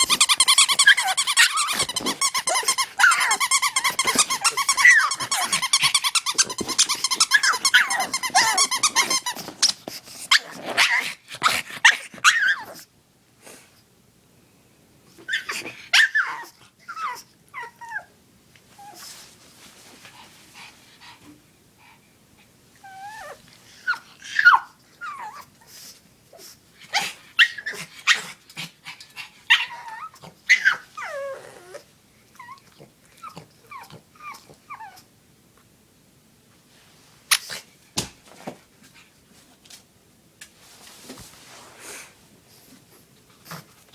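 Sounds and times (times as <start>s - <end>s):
dog whining and yelping: 0.0s - 12.9s, 15.2s - 18.1s, 22.8s - 35.1s.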